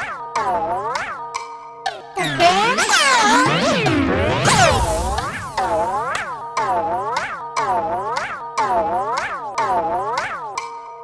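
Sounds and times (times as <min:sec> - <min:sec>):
children's music: 0:00.0 - 0:10.6
cartoon boing swoops: 0:02.2 - 0:06.4.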